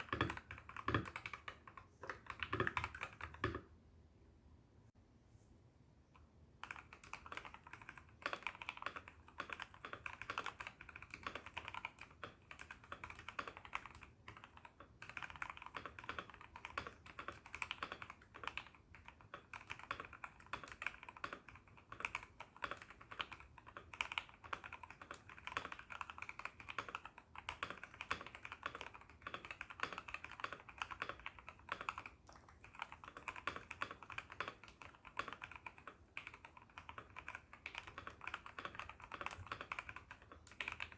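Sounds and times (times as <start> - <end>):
mechanical keyboard typing: 0.0 - 3.7, 6.6 - 40.9.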